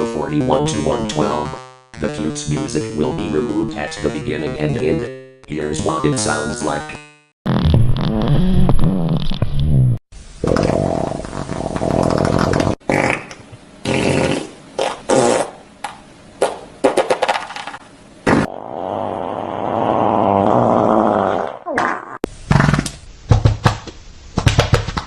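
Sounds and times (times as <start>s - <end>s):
fart sound effects: 7.5s - 15.6s, 16.4s - 23.7s.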